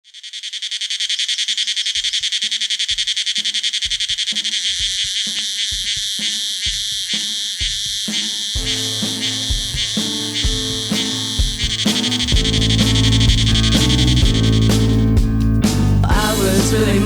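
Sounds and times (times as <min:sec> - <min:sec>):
cicada buzzing: 0:00.0 - 0:15.6
drum beat: 0:02.2 - 0:17.0
bass notes: 0:09.6 - 0:17.0.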